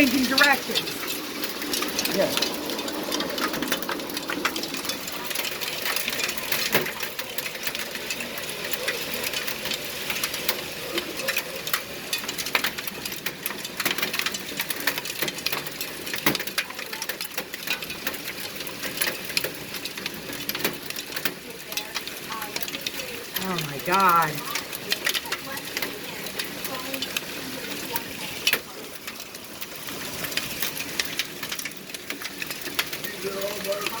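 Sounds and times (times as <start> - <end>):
hail clattering: 0.0 - 34.0.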